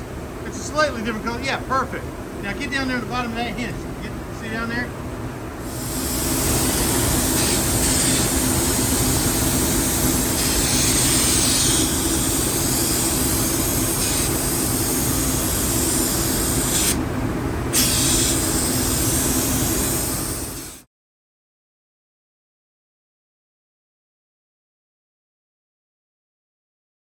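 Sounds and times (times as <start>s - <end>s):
steady mechanical hum: 0.0s - 20.9s
paint spray gun hissing: 5.6s - 17.0s, 17.7s - 20.9s.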